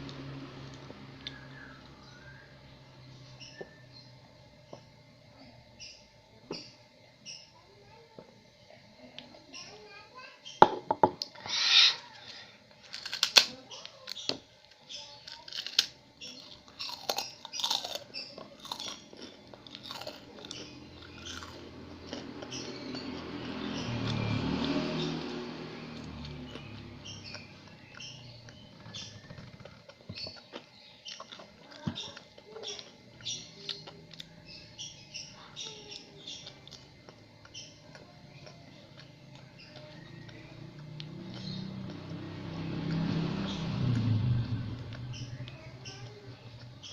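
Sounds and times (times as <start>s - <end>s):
faint low hum: 0.0s - 46.9s
chewing crisp fried food: 12.3s - 44.1s.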